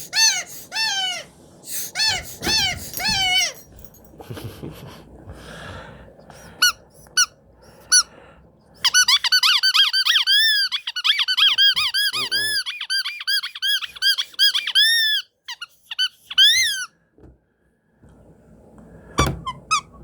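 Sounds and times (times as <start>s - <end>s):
high squeaks: 0.1s - 3.7s, 8.8s - 16.9s.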